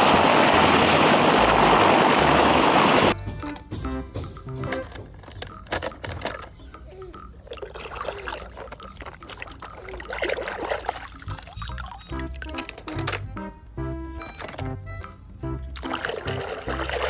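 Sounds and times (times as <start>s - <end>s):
water splashing over plastic toys: 4.6s - 13.6s, 14.2s - 17.0s.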